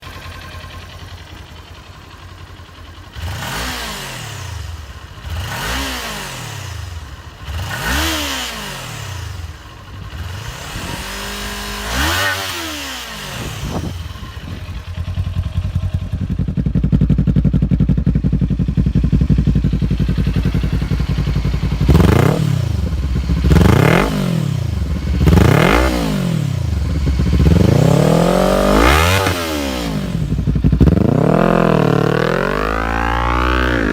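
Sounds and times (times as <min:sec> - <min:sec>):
motorcycle engine revving: 0:00.0 - 0:33.9.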